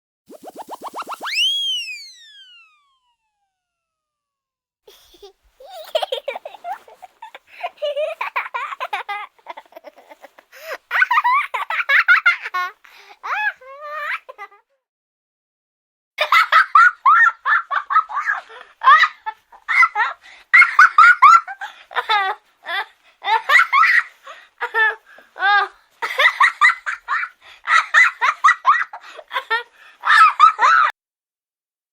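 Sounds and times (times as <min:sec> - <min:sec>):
young children giggling: 0:04.9 - 0:14.6, 0:16.2 - 0:30.9.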